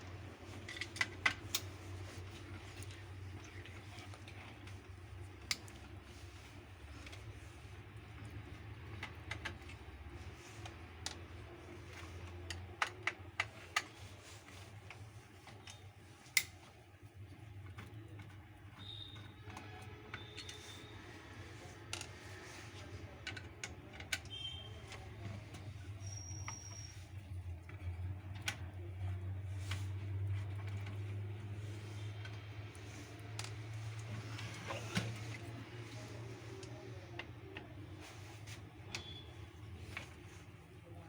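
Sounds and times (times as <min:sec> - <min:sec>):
light clicks and taps: 0:00.1 - 0:41.0
faint high squeaks: 0:25.8 - 0:27.2.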